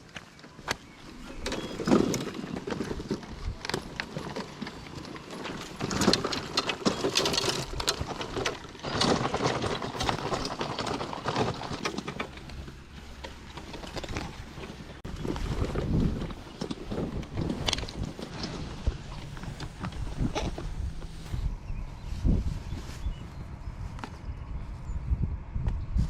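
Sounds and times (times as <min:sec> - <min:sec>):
footsteps on rough ground: 0:00.0 - 0:25.0
fishing gear clattering: 0:01.1 - 0:21.1.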